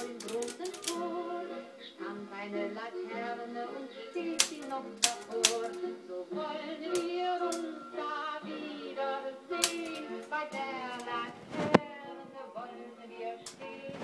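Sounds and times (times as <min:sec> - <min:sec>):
typewriter keys clacking: 0:00.0 - 0:01.0, 0:04.4 - 0:05.8, 0:09.6 - 0:10.0
music with singing: 0:00.0 - 0:14.0.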